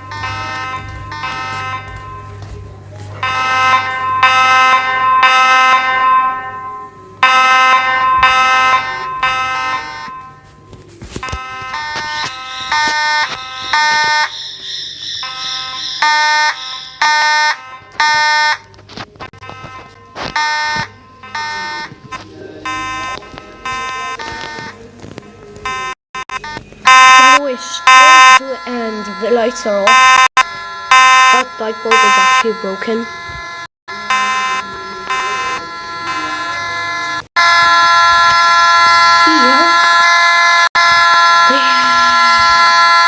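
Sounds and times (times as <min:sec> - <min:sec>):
fire alarm horns pulsing: 0:00.0 - 0:24.8, 0:25.5 - 0:43.0.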